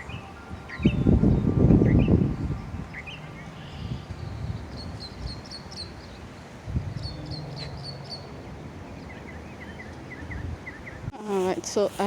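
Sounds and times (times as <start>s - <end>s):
high bird chirps: 0.0s - 6.3s
lower repeated bird notes: 0.0s - 11.1s.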